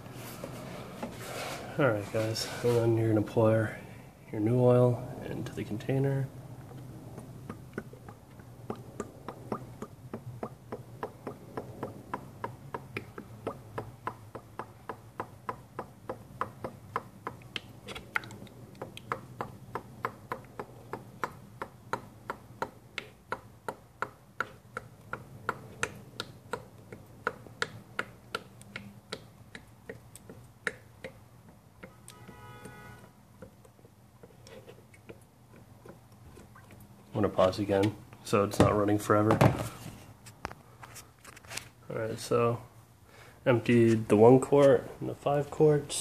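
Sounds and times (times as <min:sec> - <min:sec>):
motor oil glugging from a jug: 0:06.6 - 0:22.2.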